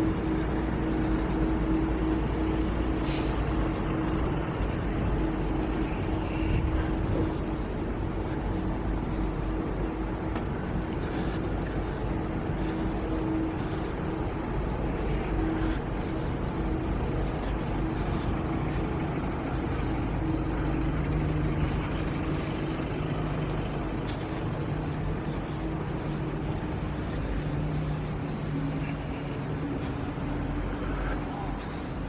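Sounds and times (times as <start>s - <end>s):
city street traffic: 0.0s - 32.0s
vehicle engine humming: 0.0s - 32.0s.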